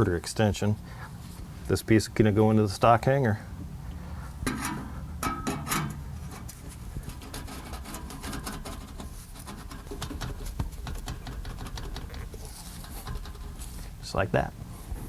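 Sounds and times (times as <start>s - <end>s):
steady low hum: 0.0s - 15.0s
exhaust pipe clicks and taps: 8.3s - 13.8s.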